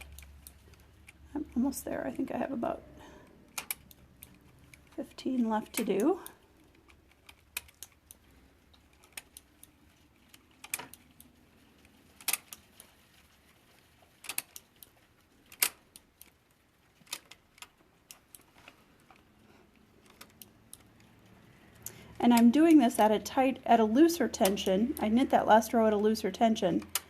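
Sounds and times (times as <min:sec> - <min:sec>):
latch tool clicking on needles: 0:03.5 - 0:05.0, 0:05.7 - 0:09.7, 0:14.2 - 0:16.4.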